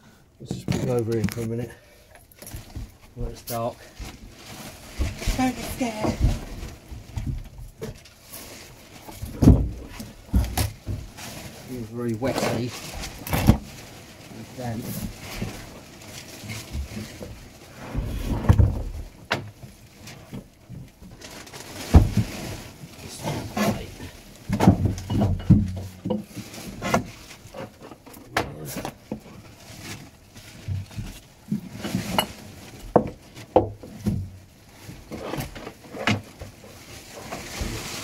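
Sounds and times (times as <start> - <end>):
hard objects knocking and rattling: 9.0 - 11.4, 23.2 - 29.4.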